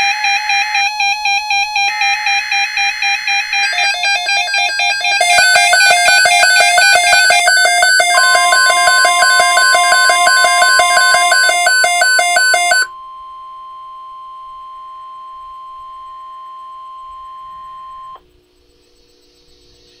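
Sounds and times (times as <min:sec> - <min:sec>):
steady alarm tone: 0:00.5 - 0:12.9
rapidly pulsing electronic beeping: 0:02.8 - 0:12.9.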